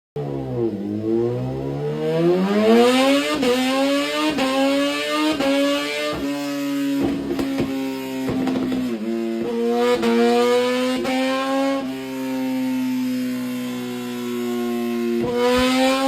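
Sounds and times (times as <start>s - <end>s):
vehicle engine revving: 0.2s - 16.0s.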